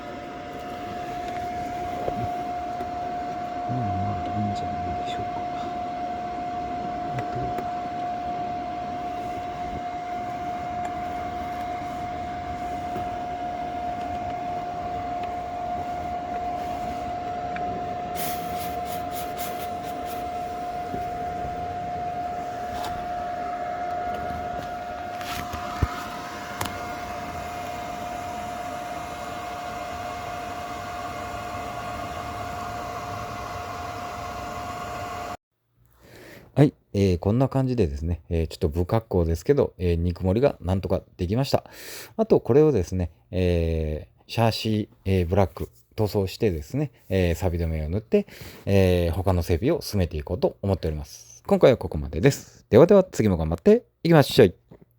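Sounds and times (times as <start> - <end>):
mechanical hum with whine: 0.0 - 35.4.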